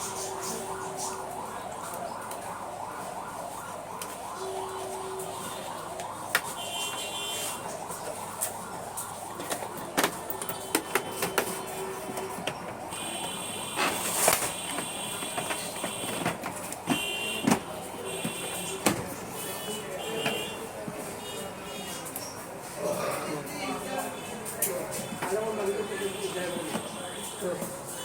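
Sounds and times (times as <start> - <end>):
printer motors whining: 9.3 - 19.2.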